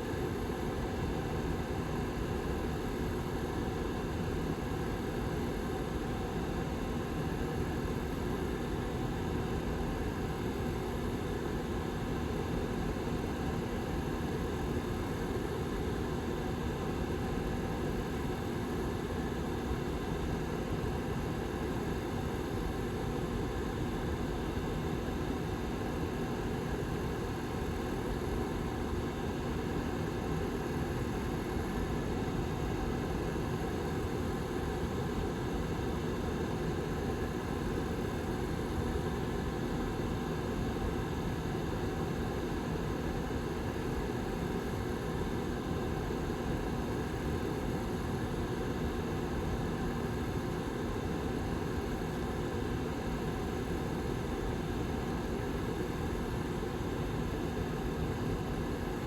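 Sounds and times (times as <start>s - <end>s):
heater fan whirring: 0.0s - 59.0s.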